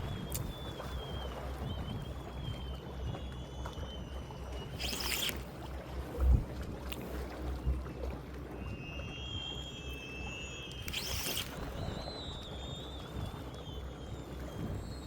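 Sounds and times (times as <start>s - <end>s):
faint high wavering whistle: 0.0s - 5.8s, 8.4s - 15.0s
wind rumbling on microphone: 0.0s - 9.1s
moving water: 0.0s - 15.0s.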